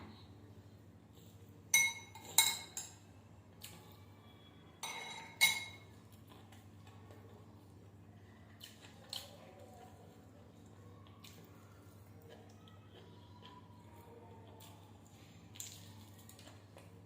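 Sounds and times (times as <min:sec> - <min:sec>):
spoon clinking against plate: 0:01.7 - 0:03.0, 0:04.8 - 0:05.9.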